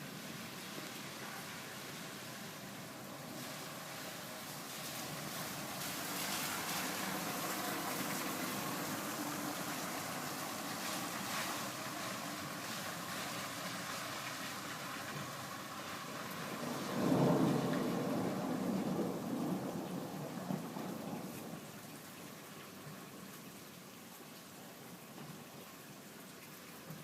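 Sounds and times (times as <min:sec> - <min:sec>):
steady rain hissing: 0:00.0 - 0:27.0
low rumble of thunder: 0:16.3 - 0:21.7.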